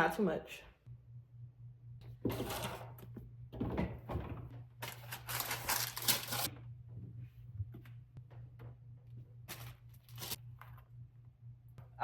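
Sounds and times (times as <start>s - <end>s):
steady low hum: 0.6s - 4.9s
items rustling and clattering: 9.4s - 10.9s.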